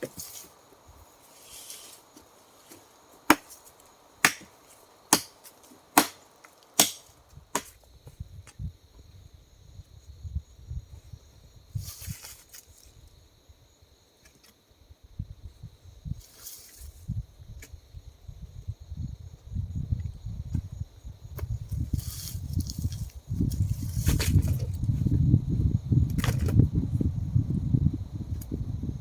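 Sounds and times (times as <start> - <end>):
high insect drone: 0.0 - 29.0
tool chopping into wood: 3.3 - 3.6, 4.2 - 6.2, 6.8 - 7.8
wind rumble on microphone: 7.2 - 13.8, 14.8 - 29.0.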